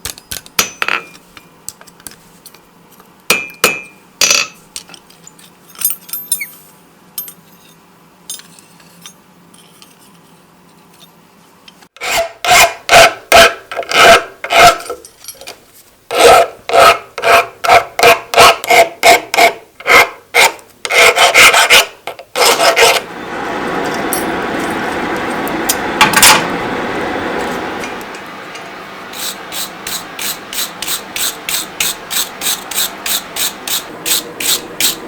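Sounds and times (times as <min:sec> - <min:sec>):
rasp filing steel: 0:16.1 - 0:23.1, 0:29.1 - 0:35.0.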